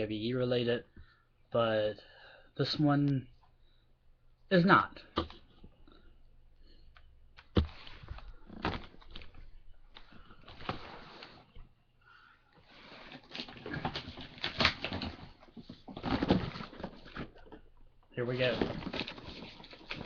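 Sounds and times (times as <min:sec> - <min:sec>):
package rustling: 0:12.8 - 0:17.6, 0:18.4 - 0:20.0.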